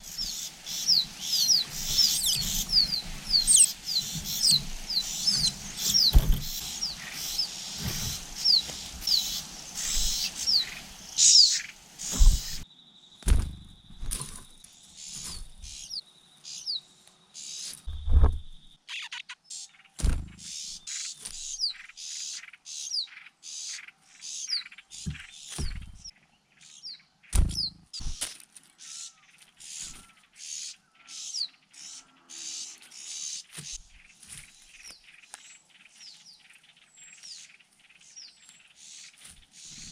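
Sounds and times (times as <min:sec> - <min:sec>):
small birds chirping: 0:00.0 - 0:39.9
low thumps: 0:02.3 - 0:06.9, 0:12.0 - 0:12.6, 0:17.9 - 0:18.7, 0:20.0 - 0:20.4, 0:25.1 - 0:26.1.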